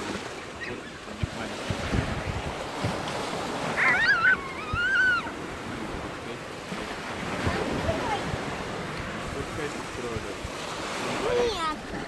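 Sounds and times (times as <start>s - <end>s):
sea surf washing: 0.0s - 12.0s
wind noise on microphone: 1.2s - 12.0s
high wavering squealing cry: 3.7s - 5.4s.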